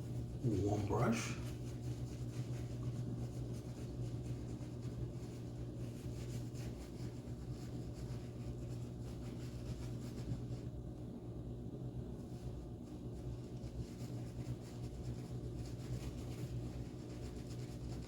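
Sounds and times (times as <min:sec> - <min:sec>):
steady low hum: 0:00.0 - 0:18.0
shaving brush swirling lather: 0:00.4 - 0:10.7, 0:12.8 - 0:18.0.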